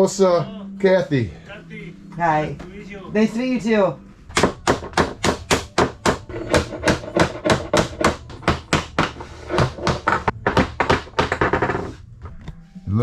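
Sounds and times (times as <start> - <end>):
rapid hammering: 4.3 - 11.9.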